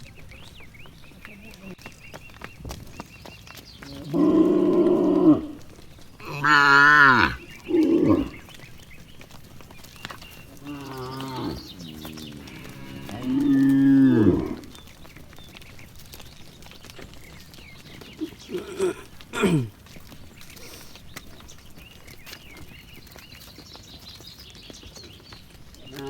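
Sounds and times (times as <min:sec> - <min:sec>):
cattle mooing: 0:04.0 - 0:22.8, 0:25.6 - 0:26.0.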